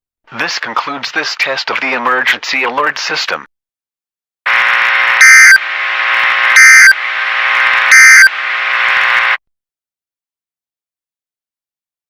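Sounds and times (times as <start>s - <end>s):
screeching digital data bursts: 4.5s - 5.6s, 6.2s - 7.0s, 7.6s - 8.4s
continuous harsh buzz: 4.5s - 9.4s.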